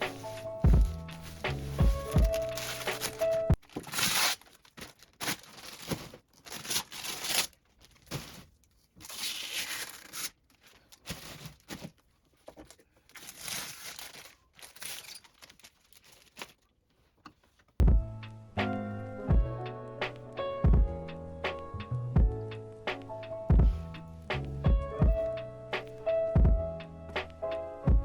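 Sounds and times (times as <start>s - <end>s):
packaging tearing and crinkling: 0.0s - 12.0s, 13.1s - 16.7s.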